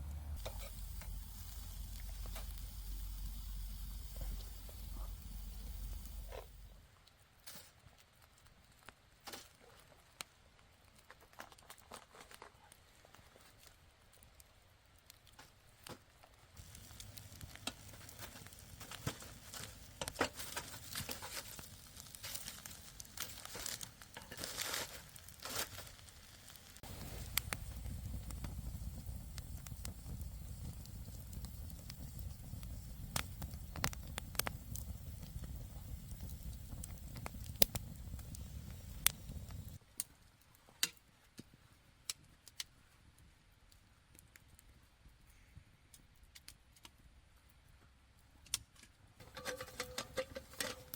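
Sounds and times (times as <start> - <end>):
low rumble: 0.0 - 6.8
campfire crackling and popping: 0.0 - 40.1, 49.2 - 50.9
rustling and crinkling handling: 9.2 - 14.0, 15.3 - 27.4, 49.2 - 50.9.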